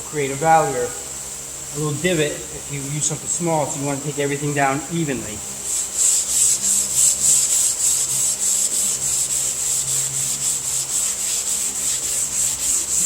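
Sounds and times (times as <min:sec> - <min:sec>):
sandpaper rasping on car panel: 0:05.6 - 0:13.0.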